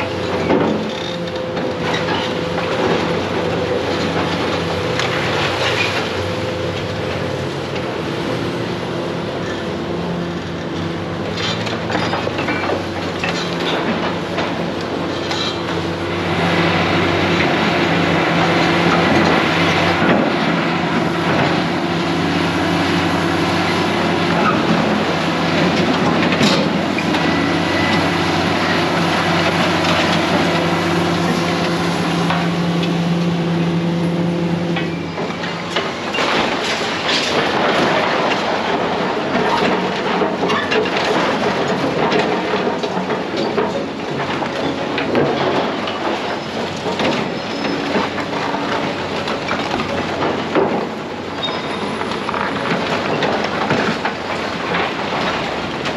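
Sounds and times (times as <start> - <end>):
diesel engine drone: 0.0 - 55.9
debris clanking and crashing: 11.3 - 34.0, 34.7 - 55.9.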